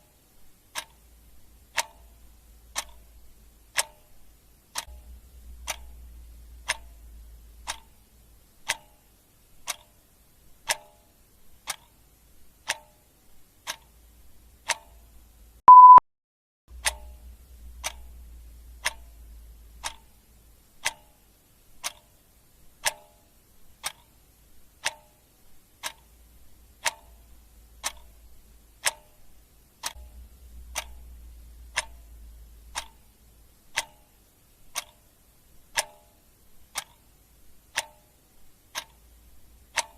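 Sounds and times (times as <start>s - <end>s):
clock ticking: 0.0s - 16.0s, 16.7s - 39.9s
short loud beep: 15.7s - 16.0s.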